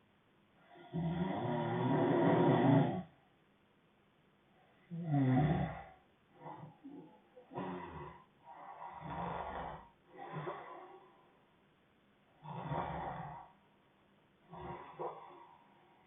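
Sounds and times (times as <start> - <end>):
man snoring: 0.8 - 3.1, 4.9 - 6.7, 7.5 - 11.0, 12.4 - 13.6, 14.5 - 15.5.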